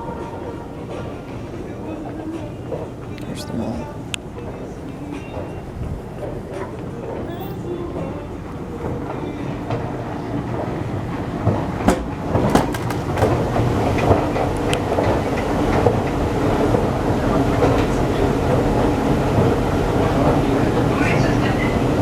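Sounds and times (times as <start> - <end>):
escalator clicks and knocks: 12.4 - 13.6.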